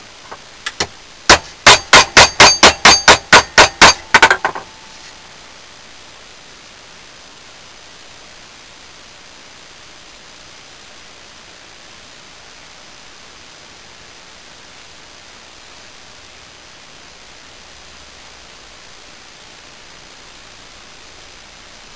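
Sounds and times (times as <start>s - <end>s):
hammer striking steel blade: 1.3s - 4.7s.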